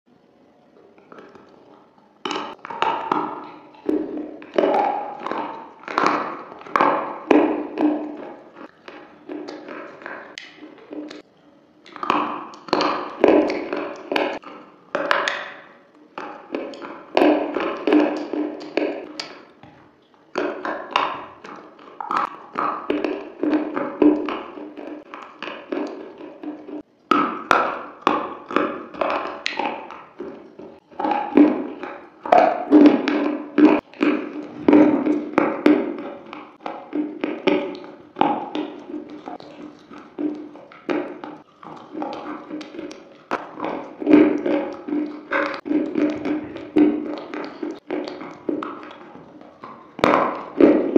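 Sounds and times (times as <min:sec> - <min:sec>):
slate being chewed with crunches: 0:00.8 - 0:50.9.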